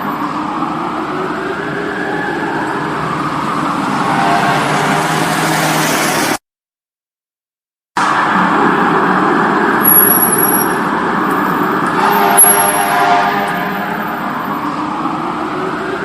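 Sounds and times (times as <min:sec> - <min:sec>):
siren wailing: 0:00.0 - 0:05.8, 0:08.0 - 0:16.0
city traffic noise: 0:00.0 - 0:06.4, 0:08.0 - 0:16.0.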